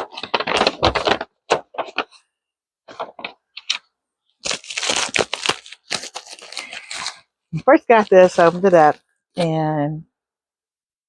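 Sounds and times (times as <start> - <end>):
plastic packaging crackling: 2.9 - 8.7.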